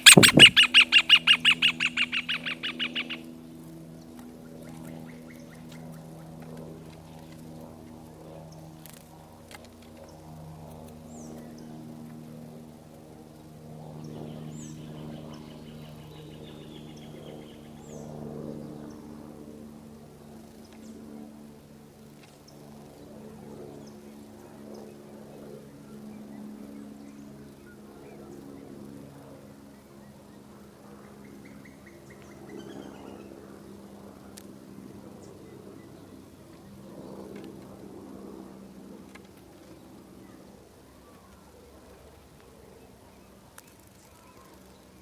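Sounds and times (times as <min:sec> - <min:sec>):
birds chirping: 0:00.0 - 0:03.2.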